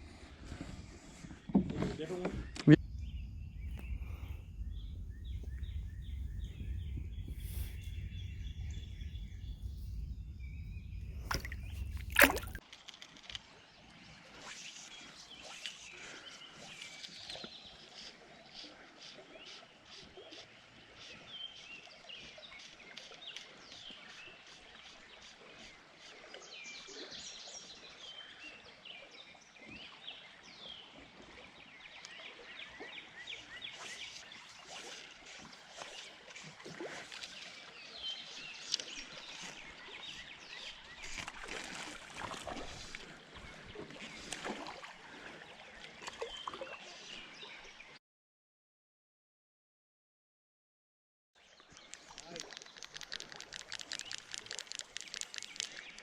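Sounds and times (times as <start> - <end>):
birds chirping: 1.5 - 12.6, 51.5 - 56.0.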